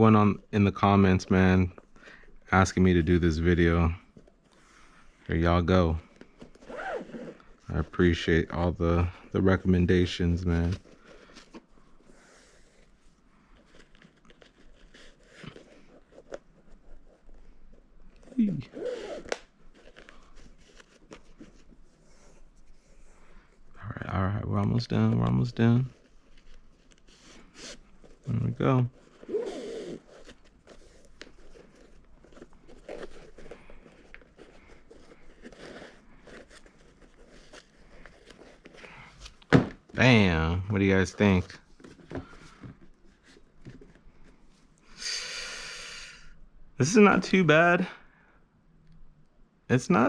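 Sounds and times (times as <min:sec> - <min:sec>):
laces rustling through eyelets: 0:04.0 - 0:09.4, 0:10.0 - 0:23.8, 0:24.7 - 0:44.8.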